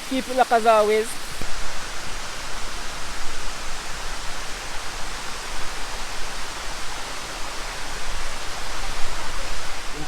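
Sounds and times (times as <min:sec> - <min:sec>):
waterfall roaring: 0:00.0 - 0:01.4.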